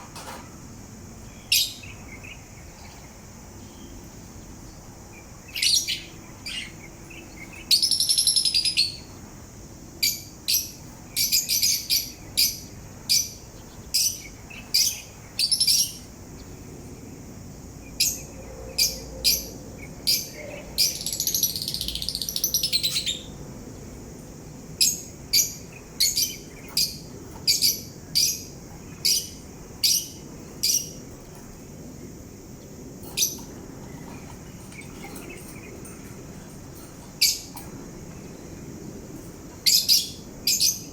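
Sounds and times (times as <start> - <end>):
parrot chirping: 20.1 - 23.3.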